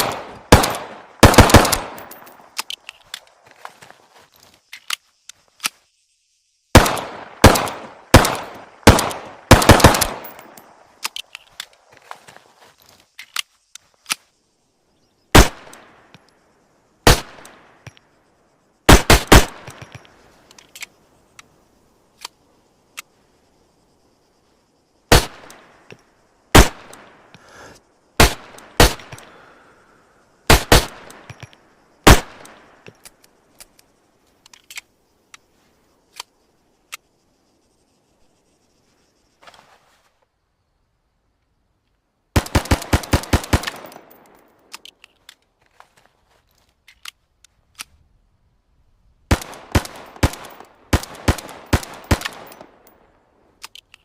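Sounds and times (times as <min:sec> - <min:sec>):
pistol shots with echo: 0:00.0 - 0:02.2, 0:06.8 - 0:10.5, 0:18.9 - 0:19.8.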